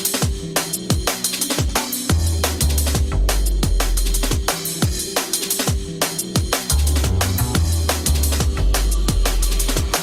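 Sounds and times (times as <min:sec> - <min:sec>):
fast breakbeat drums: 0:00.0 - 0:10.0
sustained bass notes: 0:06.7 - 0:09.4.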